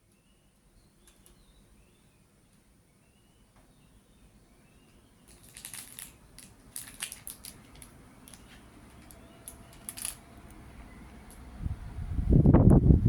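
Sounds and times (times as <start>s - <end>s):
air conditioner crackling and clicking: 0.0s - 1.7s, 4.8s - 11.6s.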